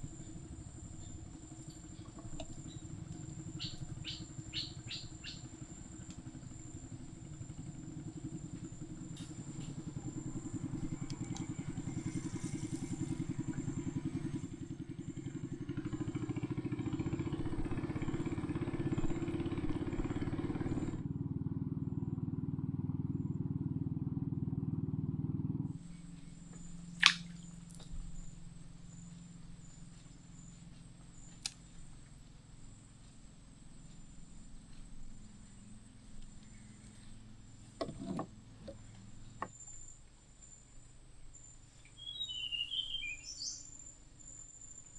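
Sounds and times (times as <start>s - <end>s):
boat motor running: 0.0s - 24.0s, 25.6s - 40.1s
faint clicks: 29.0s - 37.9s.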